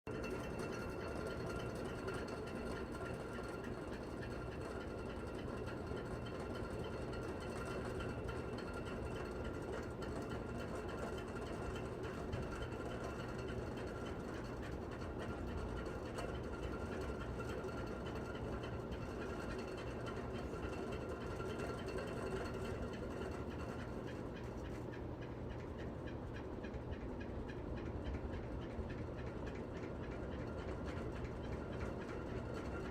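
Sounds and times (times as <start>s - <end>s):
electric fan whining and rattling: 0.1s - 32.9s.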